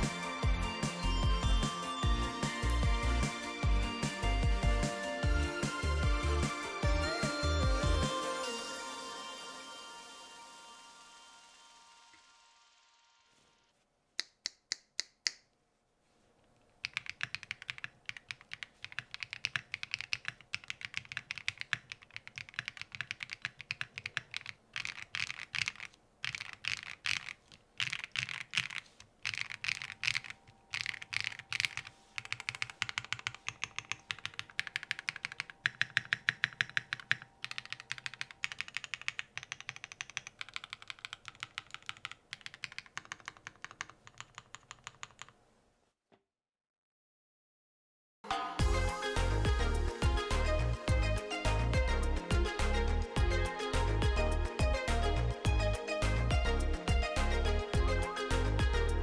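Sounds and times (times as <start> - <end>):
typing on mechanical keyboard: 16.8 - 45.4.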